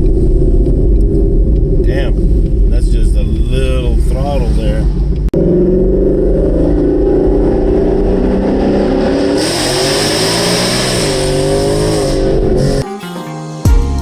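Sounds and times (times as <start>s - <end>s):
car engine running: 0.0s - 12.8s
hiss: 9.4s - 12.8s.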